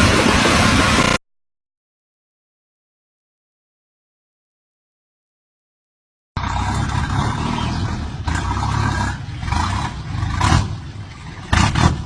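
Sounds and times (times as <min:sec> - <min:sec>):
loud noisy engine bursts: 0:00.8 - 0:01.2.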